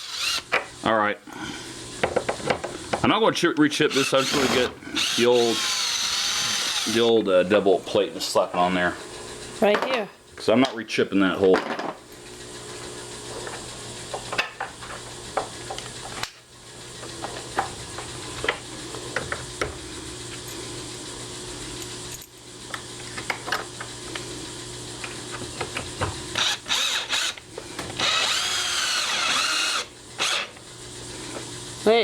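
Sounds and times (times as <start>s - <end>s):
electric drill driving screws: 0.0s - 0.5s, 3.9s - 7.2s, 26.3s - 30.6s.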